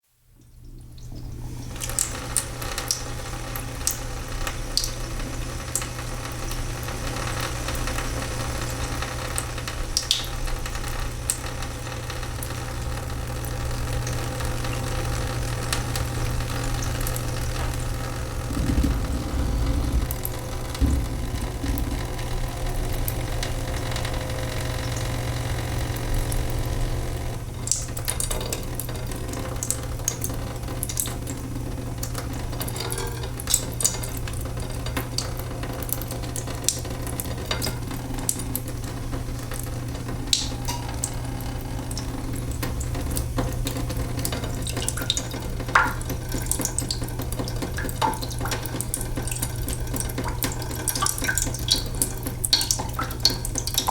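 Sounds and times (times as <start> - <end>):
water trickling into sink: 12.3 - 53.9
steady low hum: 16.5 - 28.2
water drips splashing: 18.4 - 29.0, 40.3 - 53.9.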